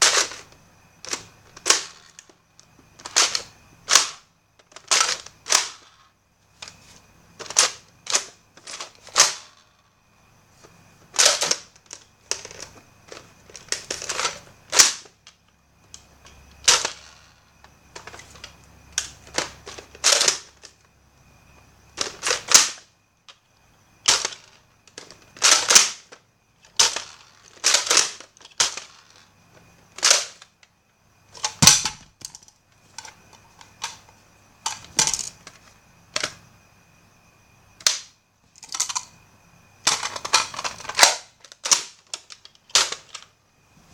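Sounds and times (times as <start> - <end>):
toy blaster plastic clacks: 3.0 - 6.0, 16.6 - 17.4, 22.0 - 22.8, 24.0 - 29.3, 30.0 - 30.5, 39.9 - 43.3.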